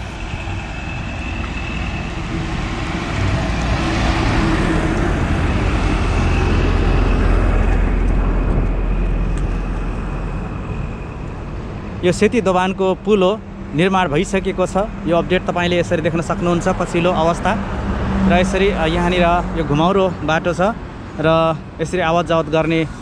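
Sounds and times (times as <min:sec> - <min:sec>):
vehicle passing on road: 0:00.0 - 0:23.0.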